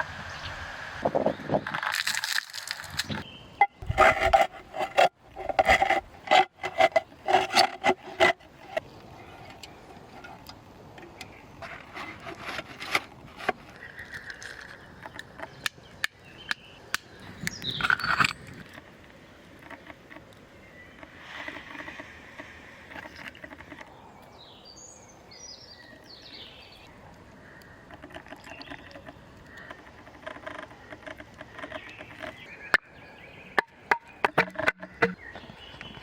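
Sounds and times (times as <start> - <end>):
rubbing and scraping: 1.0 - 10.5, 11.5 - 15.7, 21.0 - 23.9, 33.6 - 35.5
sharp clicks and knocks: 33.6 - 36.0.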